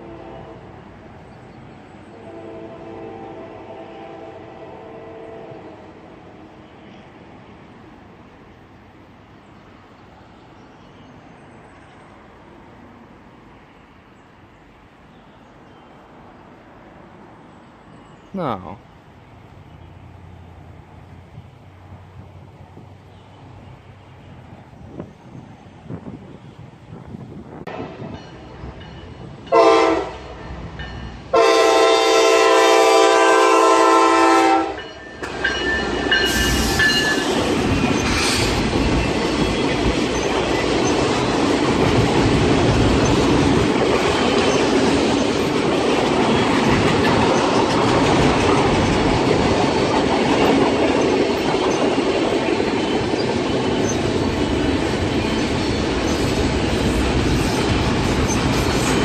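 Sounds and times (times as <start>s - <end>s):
train horn blasts: 0.0s - 0.8s, 2.1s - 6.1s, 27.7s - 28.2s, 29.5s - 30.5s, 31.3s - 35.0s
train wheels on rail: 19.0s - 59.0s.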